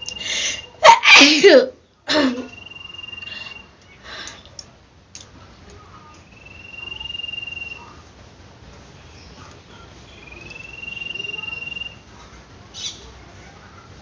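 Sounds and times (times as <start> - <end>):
high whistled notes: 6.3 - 8.0, 10.2 - 12.0.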